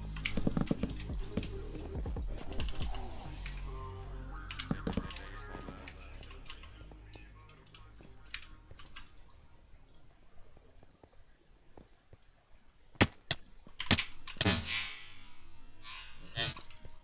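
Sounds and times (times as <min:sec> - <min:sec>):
brief rustling: 0:13.0 - 0:17.0.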